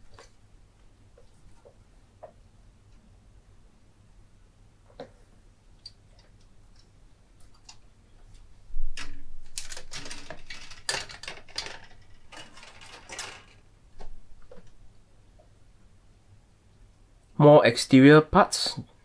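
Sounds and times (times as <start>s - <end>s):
plastic parts crinkling and clattering: 8.9s - 14.8s.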